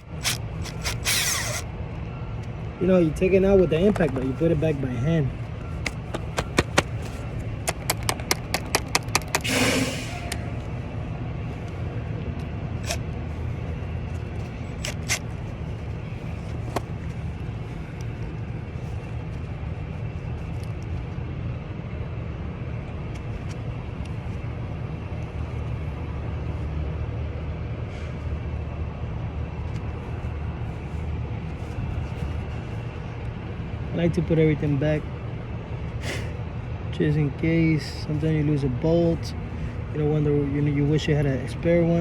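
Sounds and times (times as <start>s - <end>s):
vehicle engine rumbling: 0.0s - 42.0s.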